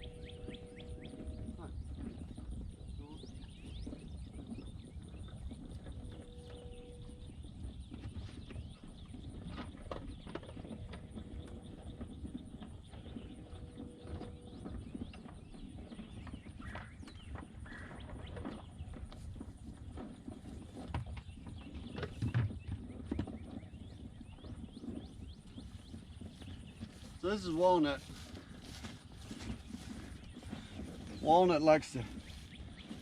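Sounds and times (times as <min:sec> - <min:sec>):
cattle hooves knocking and clicking: 0:00.0 - 0:33.0
faint birds chirping: 0:00.0 - 0:33.0
steady low rumble: 0:23.6 - 0:33.0.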